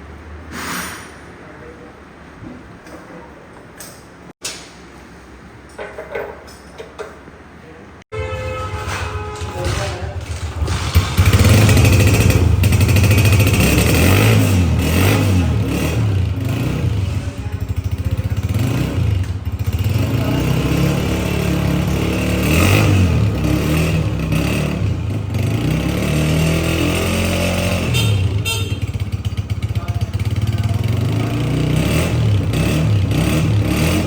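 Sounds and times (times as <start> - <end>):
motorcycle engine revving: 8.4 - 34.0.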